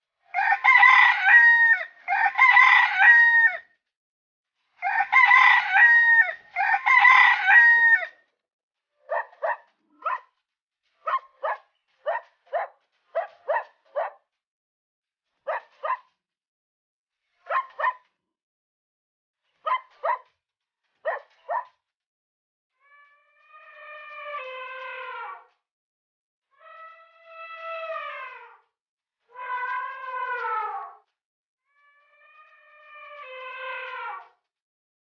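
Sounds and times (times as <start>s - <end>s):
rooster crowing: 0.3s - 3.7s, 4.8s - 8.2s.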